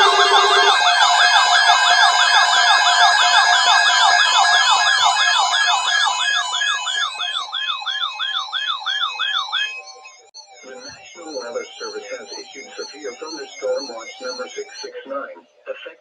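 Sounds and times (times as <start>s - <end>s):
electronic warbling siren: 0.0s - 14.9s
steady high alarm tone: 0.0s - 15.3s.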